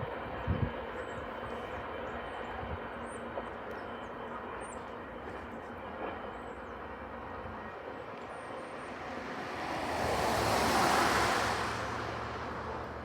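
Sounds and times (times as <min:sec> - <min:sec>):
vehicle passing: 0:08.2 - 0:13.0.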